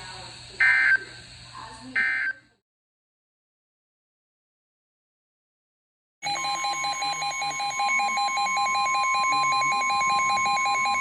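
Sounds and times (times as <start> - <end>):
rapid pulsing alarm beep: 0.6 - 1.0, 2.0 - 2.4, 6.2 - 11.0
steady warning alarm tone: 0.6 - 1.1, 2.0 - 2.4, 6.2 - 11.0.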